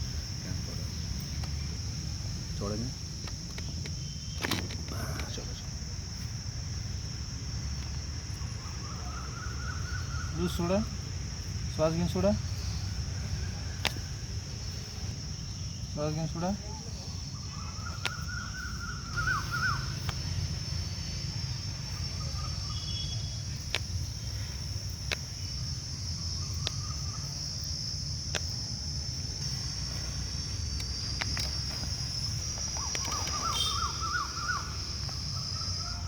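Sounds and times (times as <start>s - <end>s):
steady high-pitched hiss: 0.0s - 36.0s
birds chirping: 8.0s - 27.6s, 29.3s - 36.0s.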